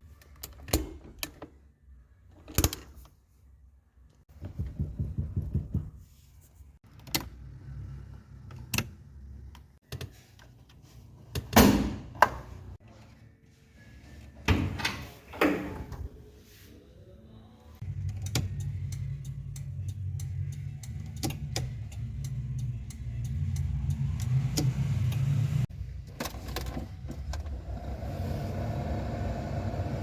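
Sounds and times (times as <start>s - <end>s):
regular ticking: 17.8s - 25.6s.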